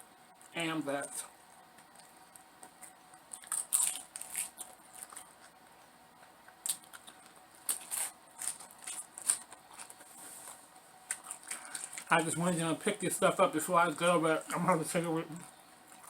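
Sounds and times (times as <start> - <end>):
chewing crisp food: 1.5 - 12.2, 13.9 - 16.0.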